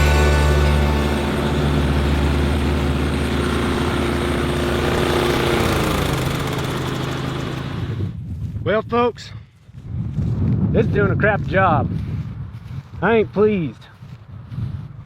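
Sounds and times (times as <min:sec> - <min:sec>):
lawn mower engines running: 0:00.0 - 0:08.2.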